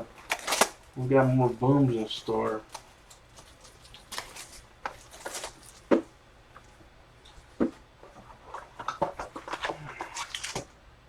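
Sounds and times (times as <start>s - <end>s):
cardboard and wrapper rustling: 0.0s - 1.5s, 2.3s - 6.1s, 7.5s - 10.7s.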